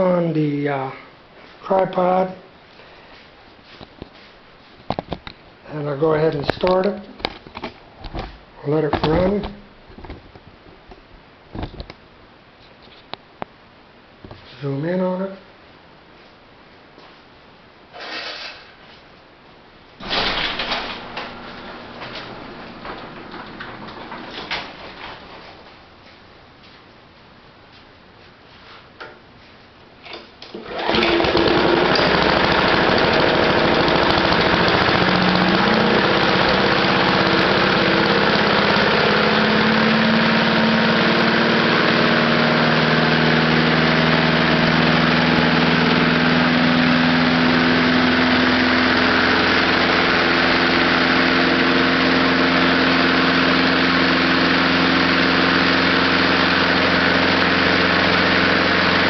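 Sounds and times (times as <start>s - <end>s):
lawnmower engine running: 20.0s - 25.6s, 30.5s - 59.0s.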